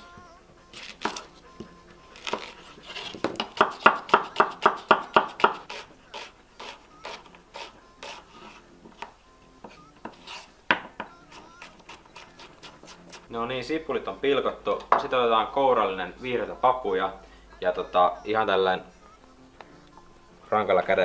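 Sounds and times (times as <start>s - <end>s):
knife chopping on cutting board: 0.8s - 1.3s, 2.2s - 13.3s.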